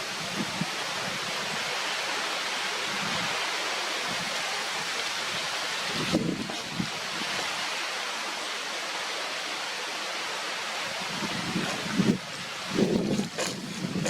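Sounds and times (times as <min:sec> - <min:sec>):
steady outdoor rushing noise: 0:10.4 - 0:14.0.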